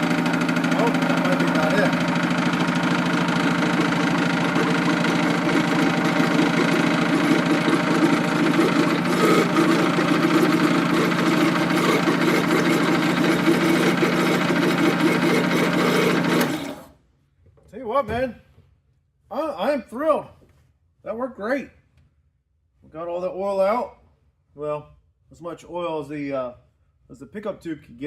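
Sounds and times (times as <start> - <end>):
electric pump running with rattle: 0.0 - 17.0.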